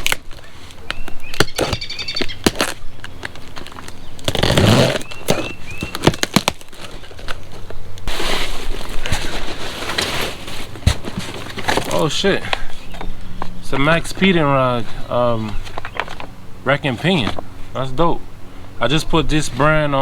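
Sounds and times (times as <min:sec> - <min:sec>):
cardboard packaging rustling: 0:00.0 - 0:16.3
bird chirping: 0:00.3 - 0:06.4, 0:12.0 - 0:17.8.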